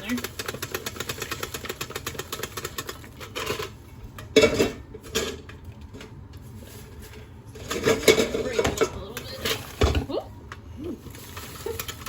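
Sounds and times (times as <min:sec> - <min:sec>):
popcorn rattling in metal popper: 0:00.0 - 0:05.5, 0:11.1 - 0:12.0.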